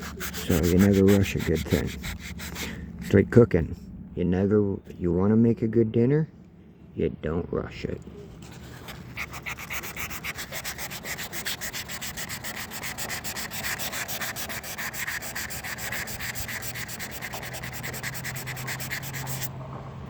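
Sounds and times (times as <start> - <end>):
sandpaper rubbing: 0.0 - 3.2, 8.4 - 19.5.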